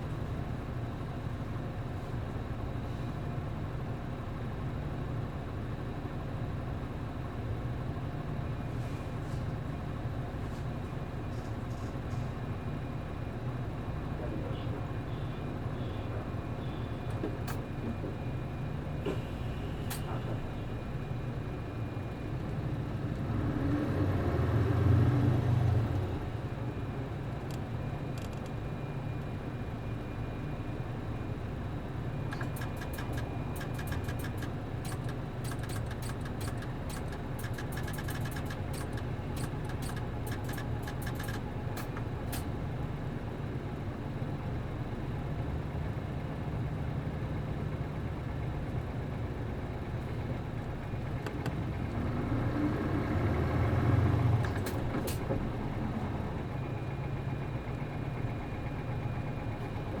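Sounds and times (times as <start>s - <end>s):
diesel bus engine idling and revving: 0.0s - 60.0s
light clicks and rattles: 32.3s - 42.5s.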